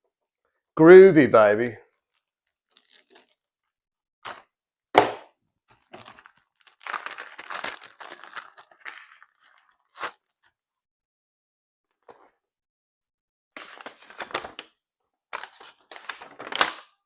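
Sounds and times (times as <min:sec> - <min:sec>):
plastic and paper crinkling: 0:01.9 - 0:03.5, 0:04.3 - 0:04.5, 0:05.7 - 0:10.3, 0:13.6 - 0:14.6, 0:15.4 - 0:16.9
sharp cracks of plastic bag: 0:05.9 - 0:09.5.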